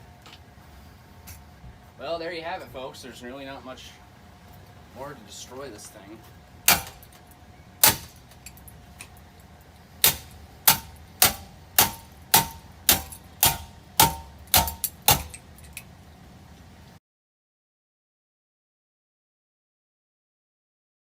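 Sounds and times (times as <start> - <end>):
metallic clanging: 6.7 - 9.2, 10.0 - 15.9.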